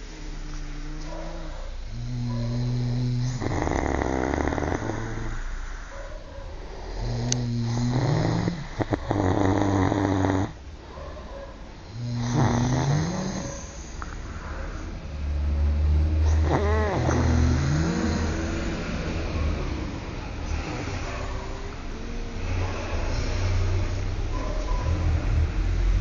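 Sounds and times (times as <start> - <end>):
men snoring loudly: 1.8 - 5.9, 6.7 - 10.6, 11.8 - 24.3
deep drone: 13.4 - 26.0.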